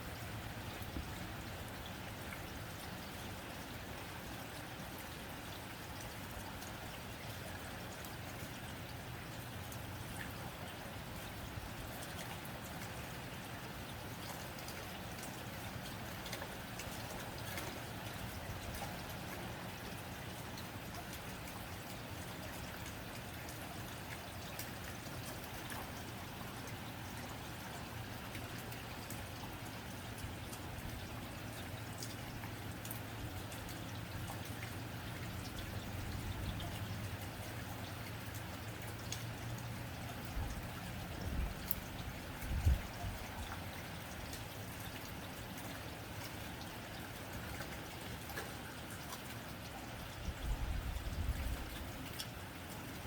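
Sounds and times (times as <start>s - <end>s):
rain on a tin roof: 0.0s - 53.0s.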